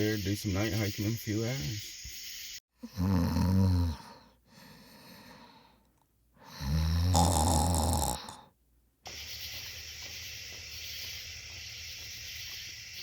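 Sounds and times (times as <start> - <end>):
person snoring: 2.8 - 4.3, 6.5 - 8.5
quiet breath: 3.9 - 6.8.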